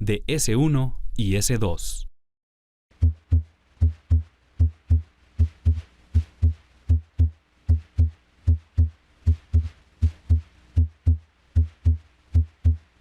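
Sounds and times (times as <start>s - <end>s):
heartbeat through stethoscope: 3.0s - 13.0s.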